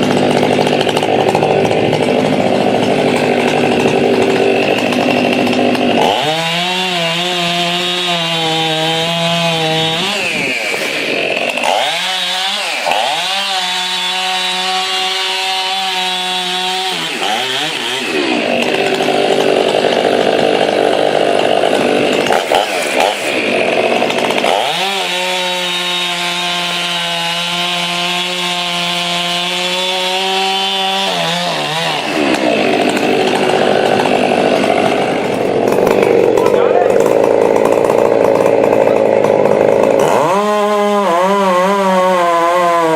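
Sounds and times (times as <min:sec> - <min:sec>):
chainsaw cutting wood: 0:00.0 - 0:42.9.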